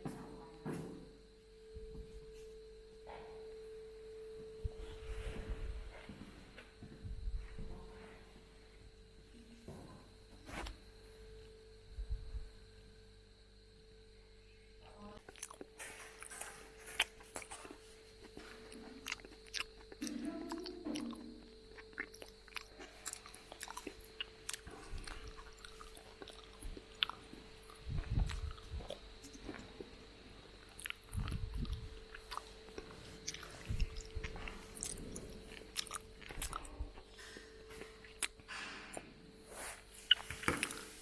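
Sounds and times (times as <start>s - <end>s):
person chewing: 15.2s - 29.8s, 30.6s - 39.0s, 40.0s - 41.0s.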